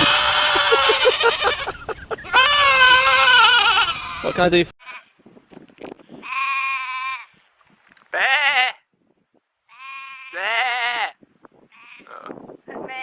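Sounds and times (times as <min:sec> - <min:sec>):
goat bleating: 0:00.0 - 0:05.1, 0:06.2 - 0:07.3, 0:08.1 - 0:08.8, 0:09.7 - 0:12.3.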